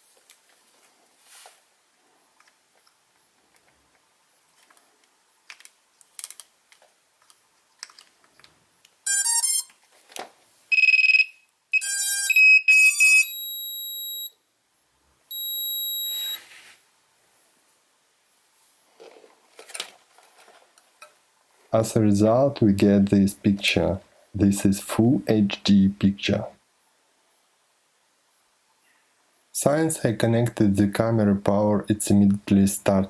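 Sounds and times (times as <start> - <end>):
electronic beeps: 9.1 - 9.7, 10.7 - 14.3, 15.3 - 16.4.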